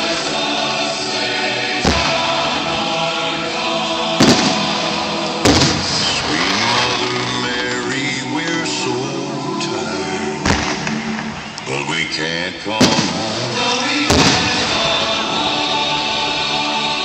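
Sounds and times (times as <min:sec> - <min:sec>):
choral music: 0:00.0 - 0:17.0
firework bangs: 0:01.8 - 0:02.9, 0:04.1 - 0:08.6, 0:10.4 - 0:11.7, 0:12.8 - 0:15.2.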